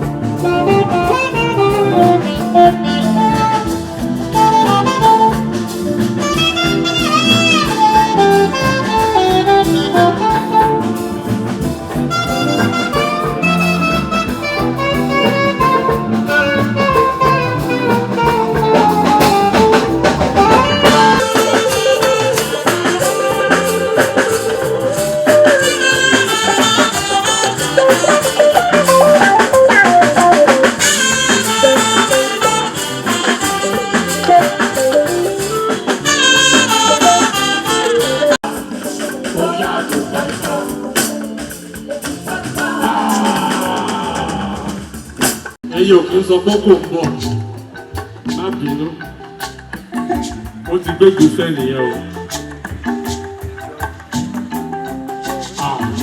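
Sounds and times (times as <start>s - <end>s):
horn melody: 0.0s - 44.6s
drum kit: 0.0s - 56.0s
instrumental band music: 0.0s - 56.0s.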